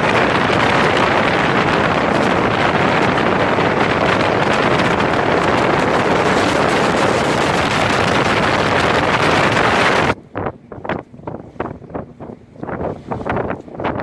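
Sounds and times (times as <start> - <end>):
water rushing: 0.0 - 10.2
speedboat engine: 0.0 - 14.0
wind buffeting microphone: 0.0 - 14.0.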